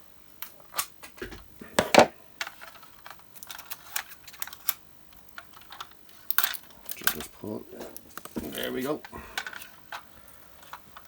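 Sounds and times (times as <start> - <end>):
plastic packaging handled: 5.6 - 11.0.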